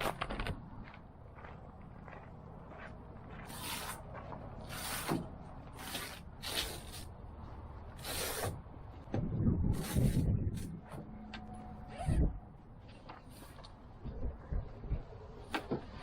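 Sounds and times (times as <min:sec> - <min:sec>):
low thuds and bumps: 0:09.0 - 0:10.8.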